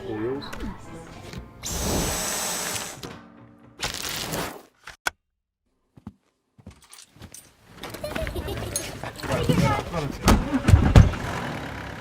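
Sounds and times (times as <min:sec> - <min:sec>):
advert background music: 0:00.0 - 0:04.4.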